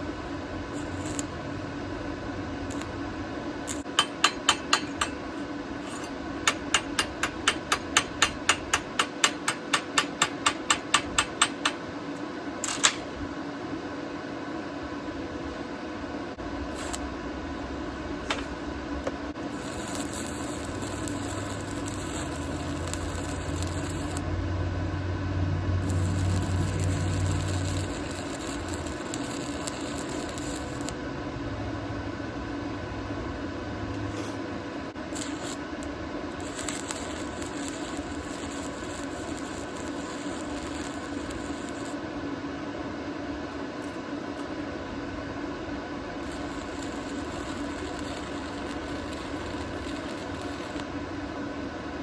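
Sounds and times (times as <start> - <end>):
welding arc crackling and hissing: 0.0 - 11.9, 16.6 - 25.1, 25.7 - 32.4, 33.9 - 42.0, 46.2 - 52.0
workshop hum: 0.0 - 52.0.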